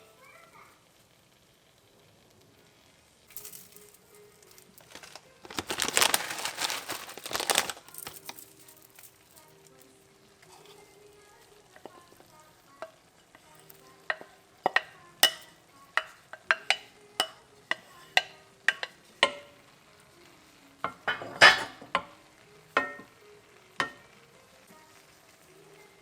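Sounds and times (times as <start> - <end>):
metal utensils clinking on pot: 3.3 - 9.6, 12.8 - 19.6, 20.8 - 22.2, 22.8 - 23.2, 23.8 - 24.0.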